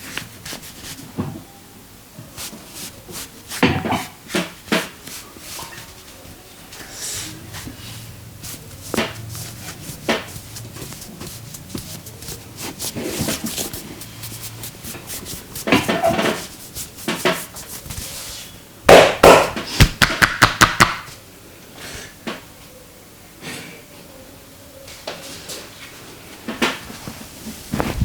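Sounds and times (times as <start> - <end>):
clicks and scuffs: 8.4 - 18.5.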